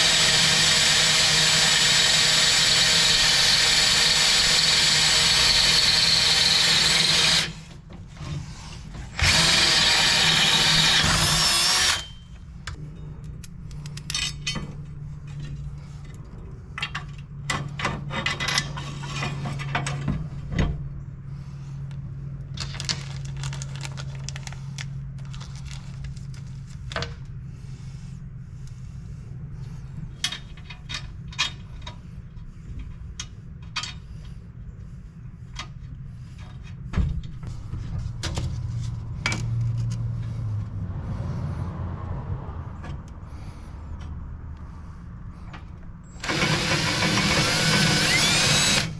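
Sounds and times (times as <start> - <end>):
power tool running: 0.0 - 7.7, 9.1 - 12.2, 46.1 - 48.9
steady low hum: 0.0 - 48.9.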